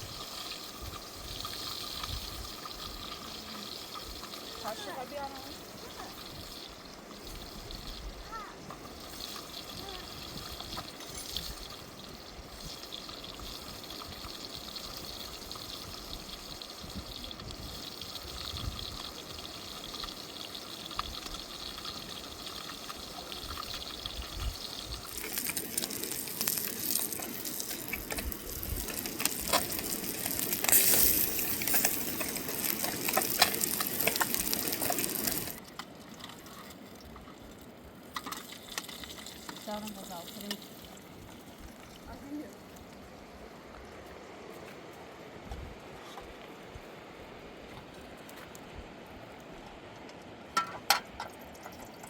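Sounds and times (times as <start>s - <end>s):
water splashing and pouring: 8.8s - 42.2s.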